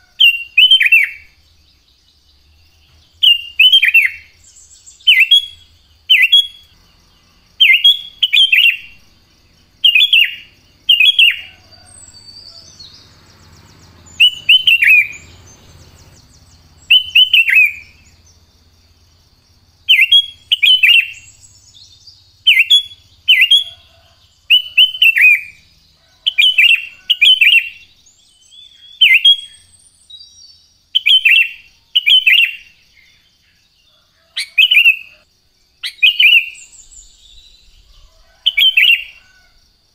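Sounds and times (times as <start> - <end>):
bulbul chirping: 9.7 - 18.5, 19.8 - 24.0.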